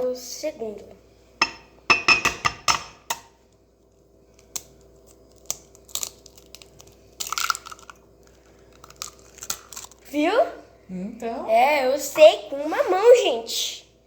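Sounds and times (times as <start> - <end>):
eggshell tapping on hard edge: 1.4 - 3.2.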